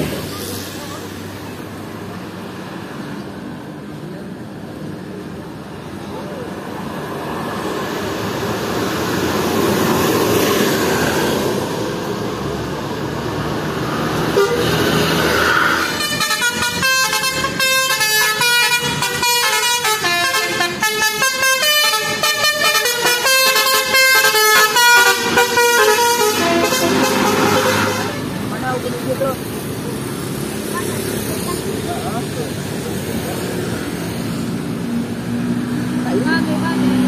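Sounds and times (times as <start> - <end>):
bus engine and tyre noise: 0.0 - 37.0
musical air horn tune: 14.4 - 14.8, 15.8 - 28.3.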